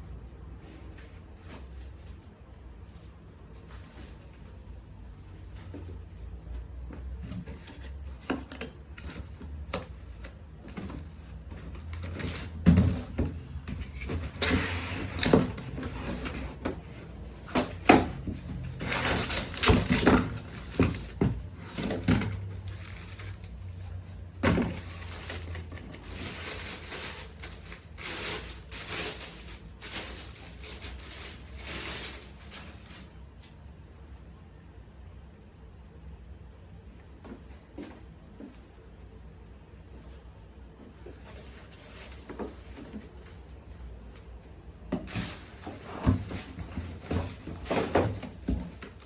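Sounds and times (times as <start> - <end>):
knocks and thumps of handling: 10.6 - 33.0, 44.9 - 49.0
packaging rustling: 13.6 - 33.2.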